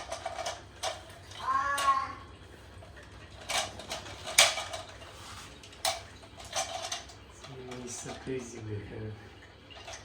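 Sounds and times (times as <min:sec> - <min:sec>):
plastic parts clicking and knocking: 0:00.0 - 0:01.0, 0:03.4 - 0:04.9, 0:05.7 - 0:08.2.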